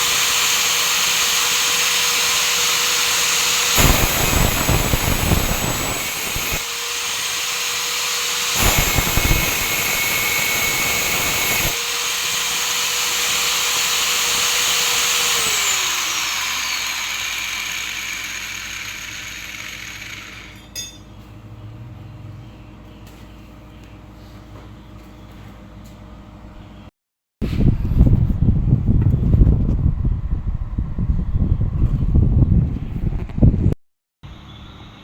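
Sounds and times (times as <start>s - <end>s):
power cutter whining: 0.0s - 20.9s
saw cutting: 0.0s - 20.9s
saw spinning down: 0.0s - 20.9s.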